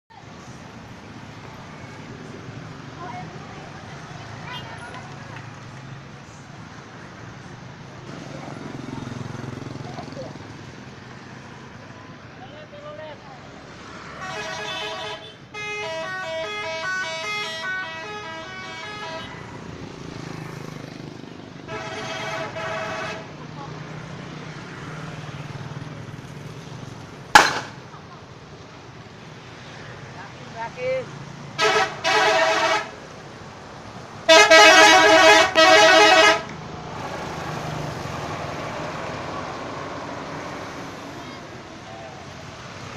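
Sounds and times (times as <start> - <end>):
vehicle noise: 0.1 - 42.9
multi-tone bus horn tune: 14.2 - 19.5, 21.7 - 23.4, 31.6 - 33.0, 34.3 - 36.5.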